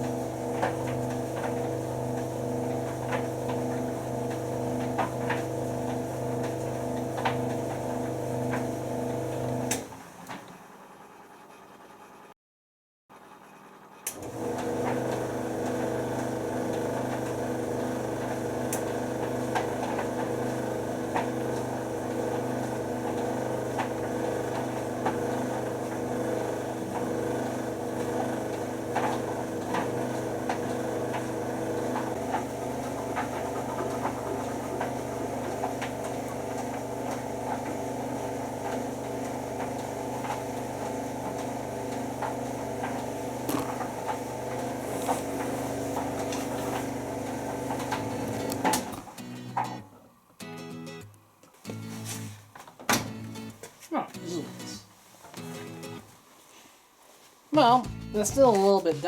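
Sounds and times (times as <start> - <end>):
tumble dryer motor and drum hum: 0.0 - 10.5, 14.1 - 49.2.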